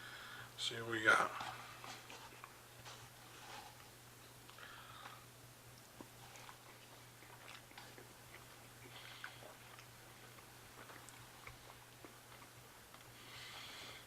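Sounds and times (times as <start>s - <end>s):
person chewing quietly: 1.3s - 14.0s.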